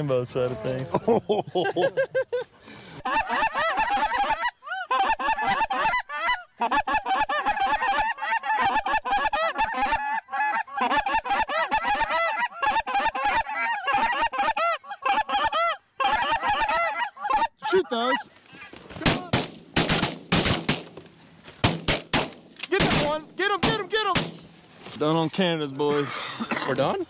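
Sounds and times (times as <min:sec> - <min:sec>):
geese honking: 0:03.0 - 0:18.8.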